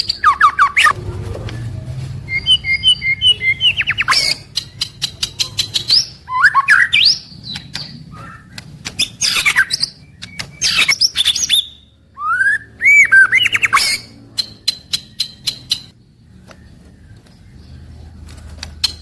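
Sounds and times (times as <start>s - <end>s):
bird singing whistled phrases: 0.0s - 0.9s, 2.3s - 15.9s.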